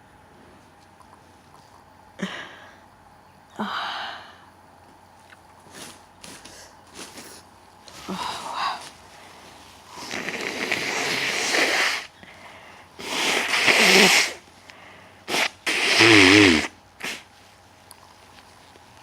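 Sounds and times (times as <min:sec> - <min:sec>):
person sneezing: 0:13.0 - 0:14.4, 0:15.3 - 0:17.3.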